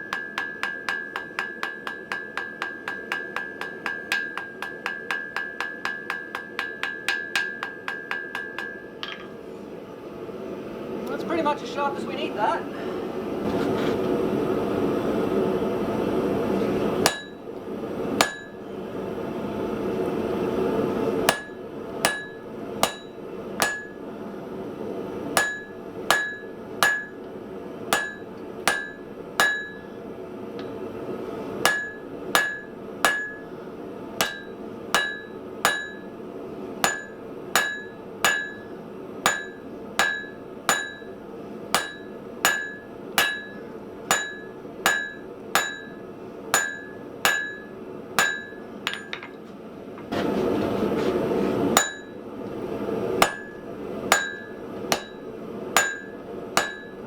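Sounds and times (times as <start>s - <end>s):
hammer striking steel on anvil: 0.0s - 9.4s, 17.0s - 17.4s, 18.2s - 18.7s, 21.3s - 24.0s, 25.4s - 27.3s, 27.9s - 29.9s, 31.6s - 33.5s, 34.2s - 36.2s, 36.8s - 49.4s, 51.8s - 52.2s, 53.2s - 57.0s.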